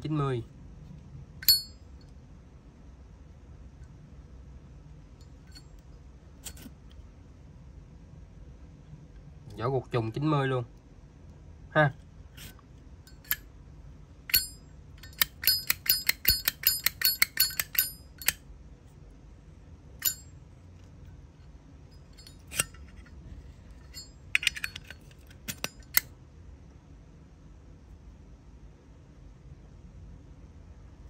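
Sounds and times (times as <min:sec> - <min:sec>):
metal lighter clicking: 0:01.4 - 0:01.8, 0:13.1 - 0:13.4, 0:14.3 - 0:18.4, 0:20.0 - 0:20.2.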